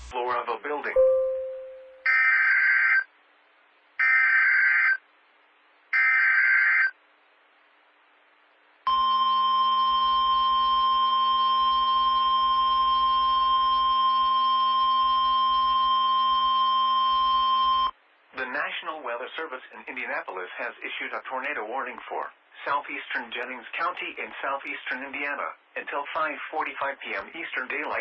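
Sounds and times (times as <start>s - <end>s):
long steady alert tone: 0.9s - 2.2s.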